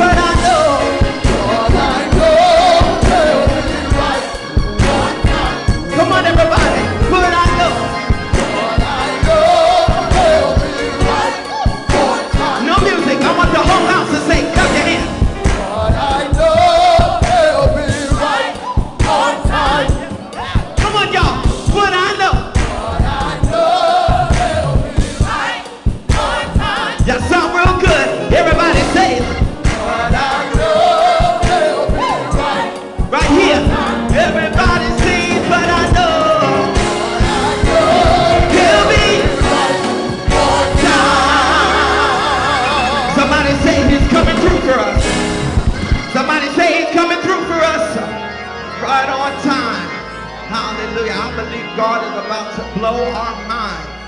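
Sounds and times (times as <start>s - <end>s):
band playing: 0.0s - 54.0s
gospel choir singing: 0.0s - 54.0s.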